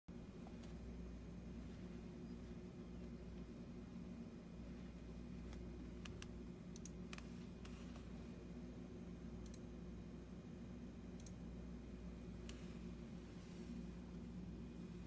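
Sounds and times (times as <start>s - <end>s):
steady low hum: 0.1s - 15.0s
keyboard keys clicking: 5.5s - 7.3s.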